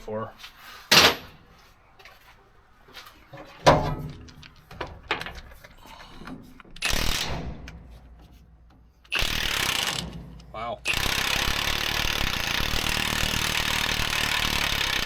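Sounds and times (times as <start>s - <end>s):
metal clank: 0.9s - 1.4s, 9.9s - 10.6s
rattling burst: 6.8s - 7.7s, 9.1s - 15.0s
impact wrench hammering: 6.8s - 7.9s, 9.1s - 15.0s.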